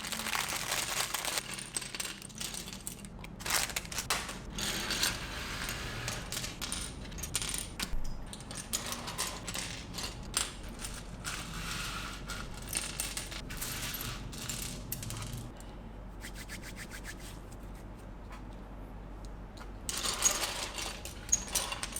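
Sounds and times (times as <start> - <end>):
plastic bricks clicking and rattling: 0.0 - 4.5.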